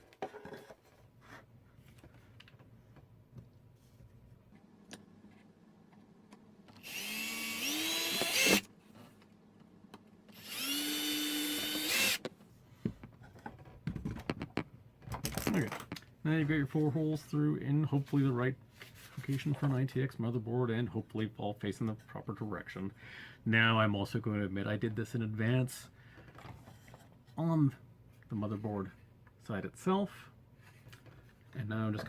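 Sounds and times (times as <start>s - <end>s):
electric drill boring: 6.8s - 8.7s, 10.3s - 12.2s.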